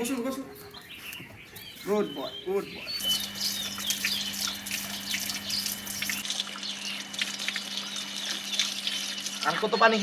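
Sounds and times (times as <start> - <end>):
dog drinking water: 2.9 - 9.5
water running and splashing: 3.0 - 10.0.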